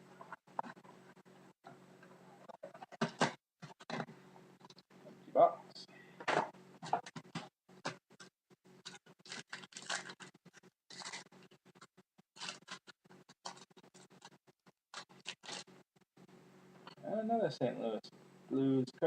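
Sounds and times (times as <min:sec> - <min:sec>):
wrapper and cards rustling: 0:06.9 - 0:15.8.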